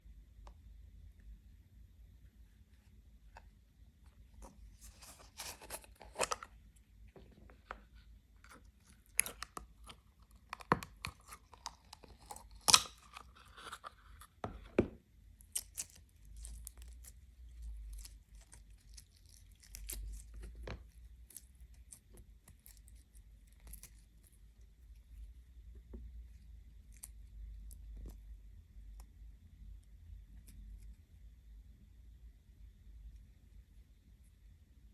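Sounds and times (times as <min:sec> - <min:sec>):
slime crackling and tearing: 0:08.8 - 0:14.2, 0:15.4 - 0:24.4.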